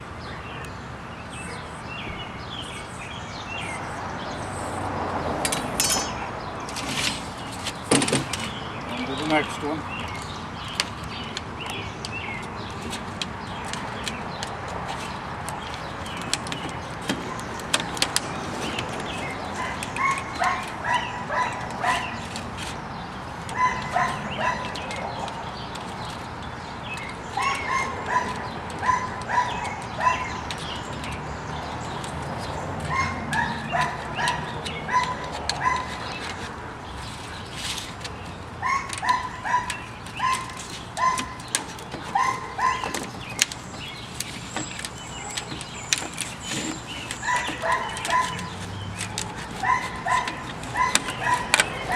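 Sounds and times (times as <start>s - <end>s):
steady background noise: 0.0s - 51.9s
dog barking: 19.6s - 22.2s, 23.6s - 24.9s, 27.4s - 30.4s, 32.9s - 36.0s, 38.6s - 41.4s, 42.1s - 43.0s, 47.2s - 48.5s, 49.5s - 51.9s.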